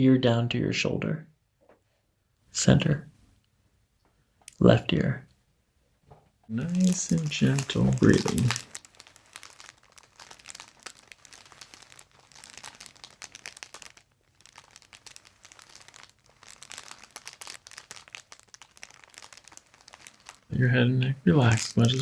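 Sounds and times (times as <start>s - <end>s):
crinkling and rustling: 6.1s - 22.0s.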